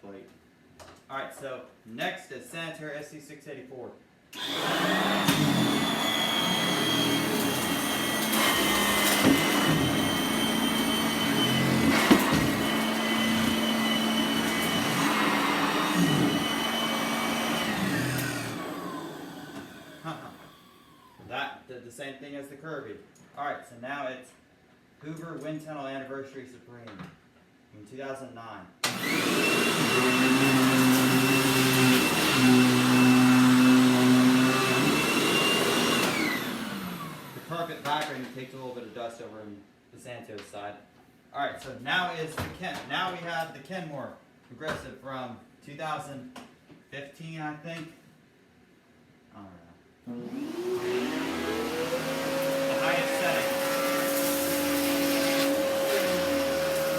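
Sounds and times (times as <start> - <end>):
vacuum cleaner motor whine: 4.4 - 21.3, 28.8 - 38.6, 50.1 - 56.9.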